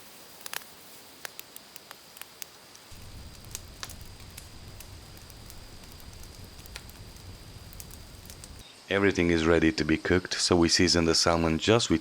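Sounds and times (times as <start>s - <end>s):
wood fire crackling and popping: 0.3s - 8.6s
low steady rumble: 2.9s - 8.6s.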